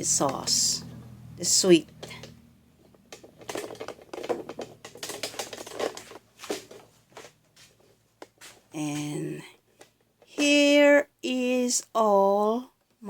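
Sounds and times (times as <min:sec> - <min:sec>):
small hard objects clicking: 0:02.9 - 0:06.8.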